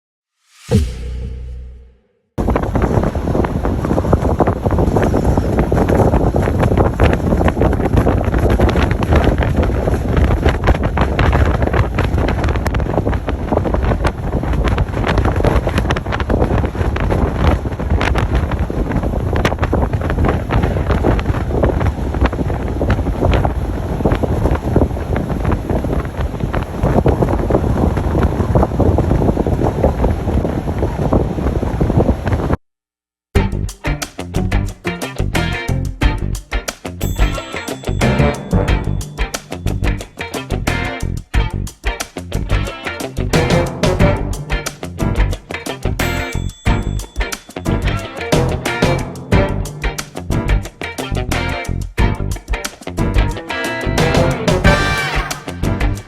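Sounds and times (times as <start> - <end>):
wind buffeting microphone: 2.4 - 32.6.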